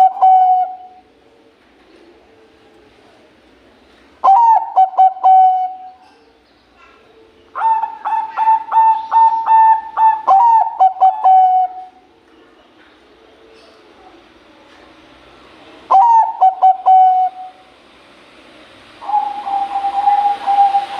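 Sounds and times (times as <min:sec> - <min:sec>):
dove cooing: 0:00.0 - 0:03.3, 0:04.2 - 0:12.1, 0:15.9 - 0:17.6, 0:19.0 - 0:20.9.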